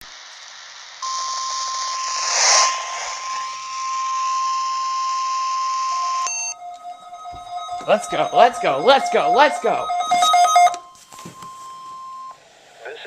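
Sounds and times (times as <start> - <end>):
radio hiss: 0.0 - 6.2, 12.4 - 13.0
steady alarm tone: 1.0 - 12.4.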